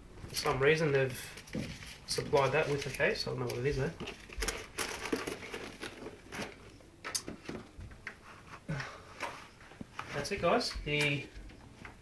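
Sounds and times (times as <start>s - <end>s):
plastic packaging rustling: 0.3s - 7.7s.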